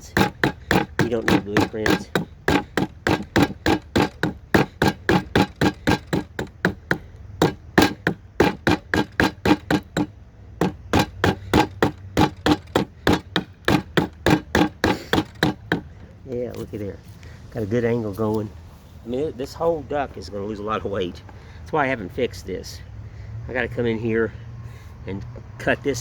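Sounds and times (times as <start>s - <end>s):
hatchet chopping wood: 0.0s - 16.1s.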